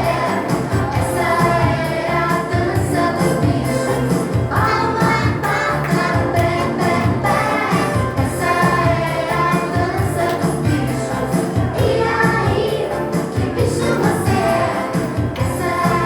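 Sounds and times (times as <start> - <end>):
song with singing and beat: 0.0 - 16.0.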